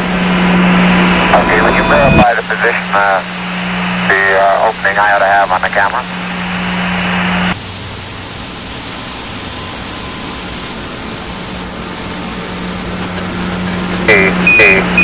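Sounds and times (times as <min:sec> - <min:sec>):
low hum: 0:00.0 - 0:08.0
radio static hiss: 0:00.0 - 0:15.0
voice over radio: 0:01.3 - 0:03.4, 0:04.0 - 0:06.6, 0:14.0 - 0:15.0.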